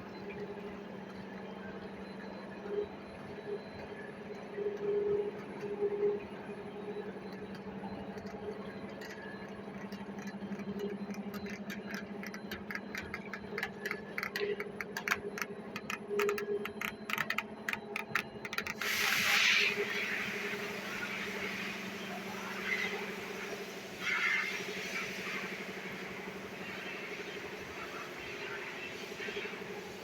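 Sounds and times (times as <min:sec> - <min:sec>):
rapid irregular clicking: 0:06.8 - 0:19.4.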